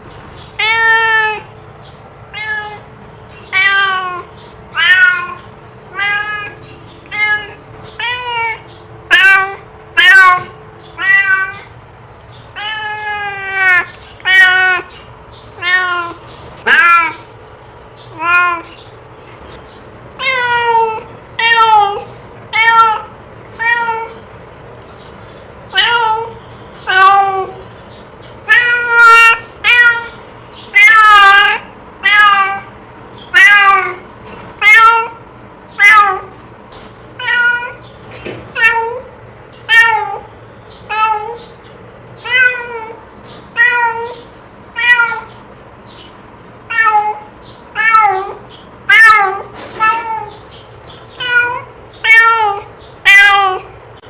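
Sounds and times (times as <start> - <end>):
cat meowing: 0.6 - 1.5, 2.3 - 11.7, 12.5 - 15.0, 15.6 - 17.4, 18.0 - 18.8, 20.2 - 24.2, 25.7 - 27.7, 28.4 - 36.4, 37.2 - 37.9, 38.5 - 40.3, 40.9 - 41.6, 42.2 - 45.4, 46.6 - 50.5, 51.1 - 53.8.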